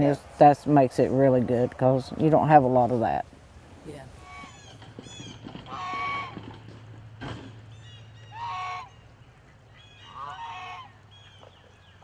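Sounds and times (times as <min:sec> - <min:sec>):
goose honking: 0:04.2 - 0:04.8, 0:05.6 - 0:06.4, 0:07.9 - 0:09.0, 0:10.0 - 0:11.0.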